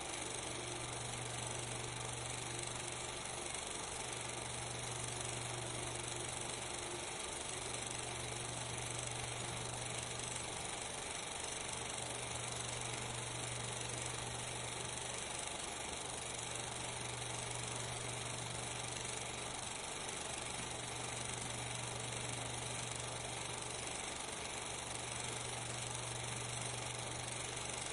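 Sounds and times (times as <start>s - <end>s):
steady hiss: 0.0s - 27.9s.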